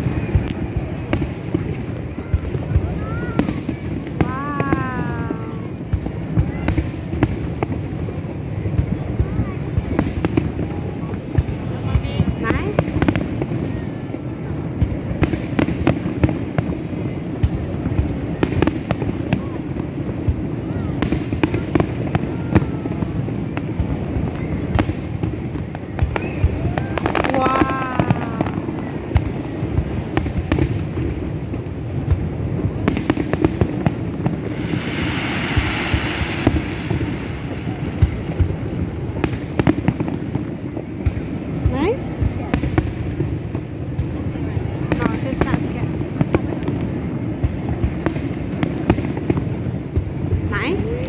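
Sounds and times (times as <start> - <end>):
fireworks bangs and crackles: 0.0 - 51.0
fireworks hiss: 32.1 - 43.3.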